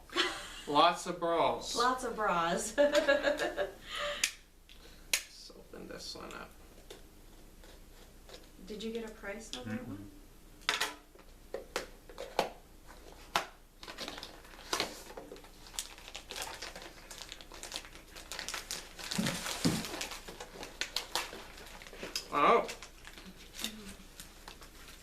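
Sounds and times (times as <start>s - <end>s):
plastic packaging crinkling: 13.8s - 25.0s.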